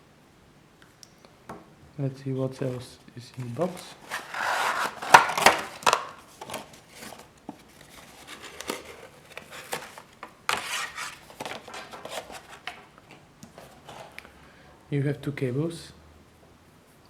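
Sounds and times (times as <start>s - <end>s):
cardboard box rustling: 2.6s - 14.2s.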